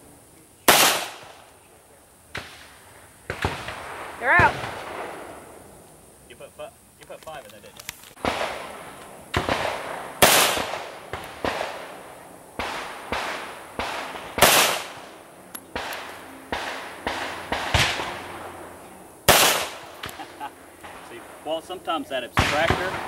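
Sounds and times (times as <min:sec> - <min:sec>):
pistol shots with echo: 0:00.6 - 0:01.5, 0:08.2 - 0:18.6, 0:19.3 - 0:21.0, 0:22.4 - 0:23.0.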